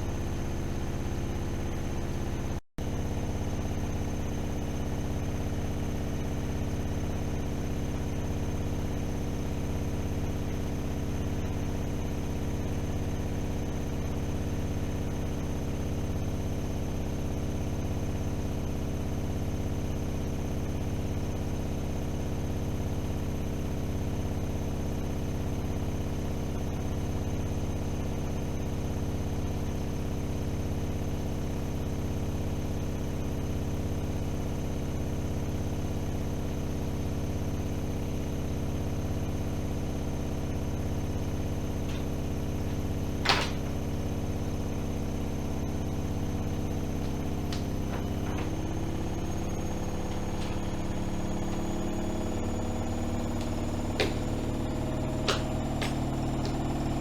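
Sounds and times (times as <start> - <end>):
washing machine spinning: 39.0 - 57.0.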